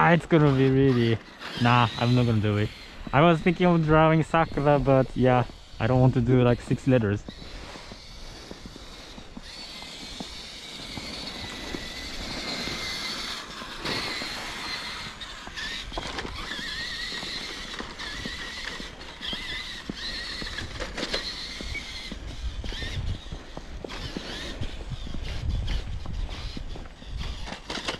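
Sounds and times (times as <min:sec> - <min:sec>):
electric toy truck motor whining: 0:00.0 - 0:27.9
tyres crunching in snow: 0:00.0 - 0:27.9.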